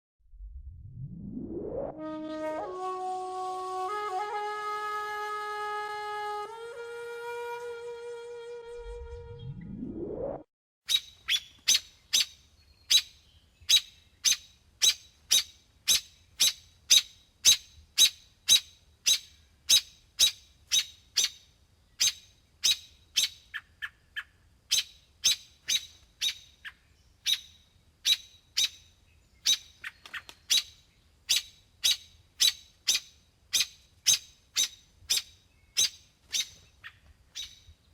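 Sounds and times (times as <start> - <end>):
robin alarm call ticks: 24.7 - 27.5, 28.1 - 28.8, 29.4 - 37.7.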